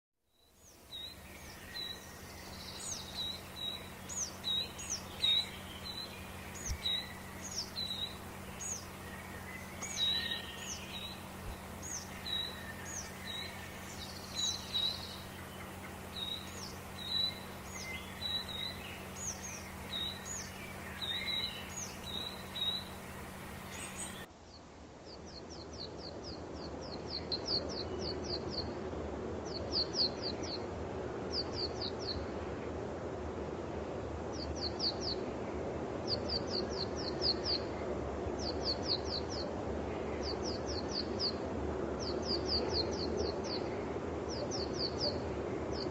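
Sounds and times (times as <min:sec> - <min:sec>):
small birds calling: 0:00.4 - 0:24.3
steady low hum: 0:00.4 - 0:31.4.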